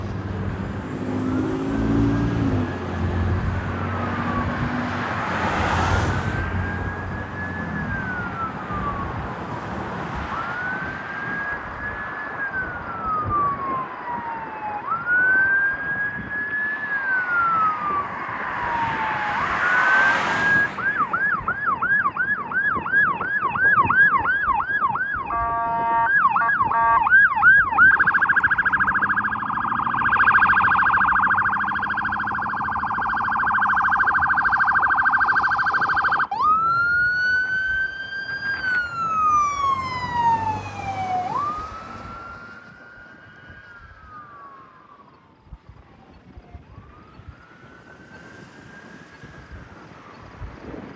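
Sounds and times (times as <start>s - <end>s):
passing vehicle noise: 0.0s - 15.5s, 16.5s - 50.9s
ambulance siren: 0.0s - 50.9s.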